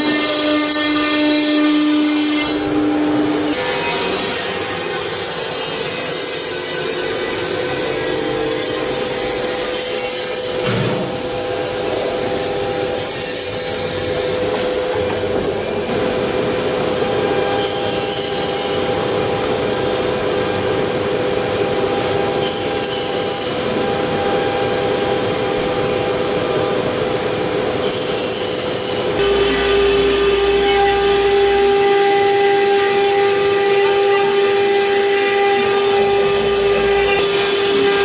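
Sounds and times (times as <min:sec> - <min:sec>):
router spindle whine: 0:28.1 - 0:38.0.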